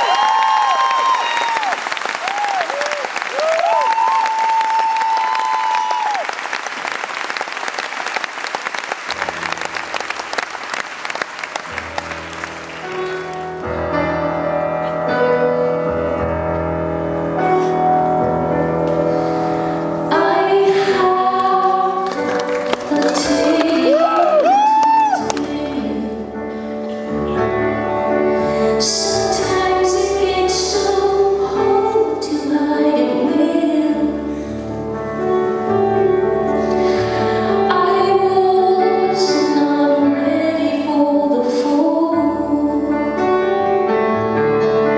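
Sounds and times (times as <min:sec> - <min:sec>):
audience applauding: 0:00.0 - 0:13.7, 0:22.0 - 0:25.5
woman singing: 0:20.1 - 0:26.6, 0:28.5 - 0:34.3, 0:37.3 - 0:43.5.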